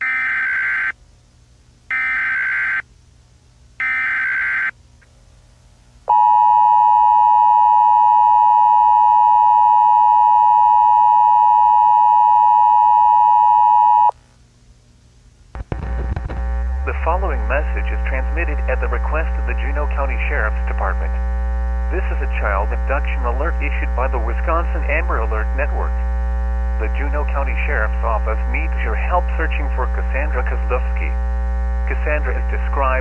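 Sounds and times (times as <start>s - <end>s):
buzzy data tone bursts: 15.6s - 33.0s.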